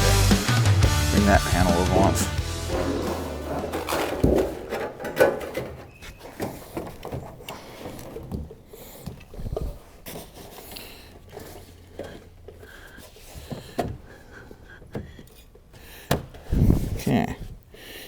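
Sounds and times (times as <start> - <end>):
hands handling objects clattering: 2.4 - 14.2.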